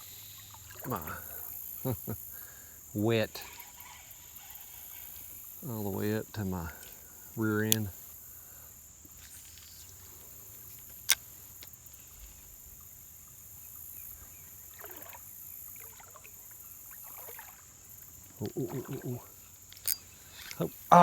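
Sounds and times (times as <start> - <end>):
insects trilling: 0.0 - 21.0
water sloshing around wading legs: 9.1 - 21.0.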